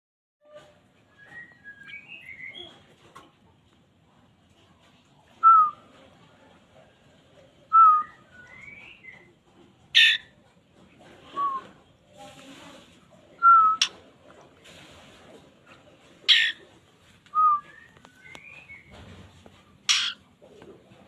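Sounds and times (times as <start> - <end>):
bird whistling calls: 10.0 - 10.3, 13.4 - 13.9, 16.3 - 16.6, 17.4 - 18.9, 19.9 - 20.2.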